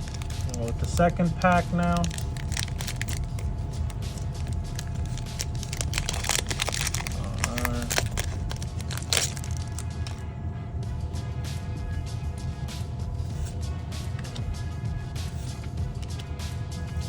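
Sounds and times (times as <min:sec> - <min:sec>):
foil pack crinkling: 0:00.0 - 0:10.2.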